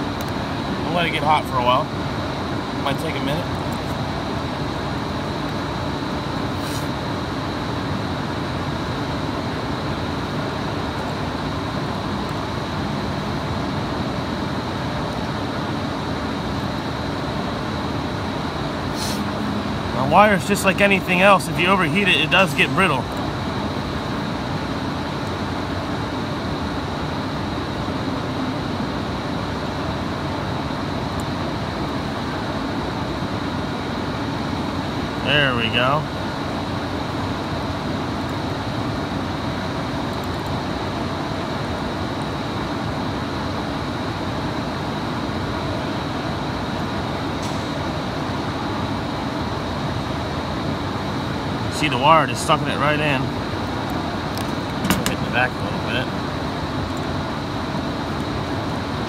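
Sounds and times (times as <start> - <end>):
steady background hum and hiss: 0.0 - 59.0
steady rushing noise: 47.2 - 59.0.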